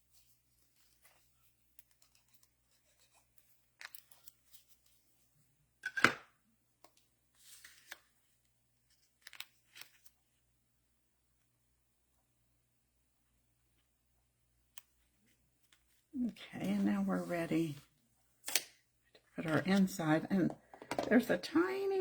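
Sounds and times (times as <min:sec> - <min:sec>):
paper rustling: 0:00.1 - 0:05.1, 0:06.8 - 0:10.3.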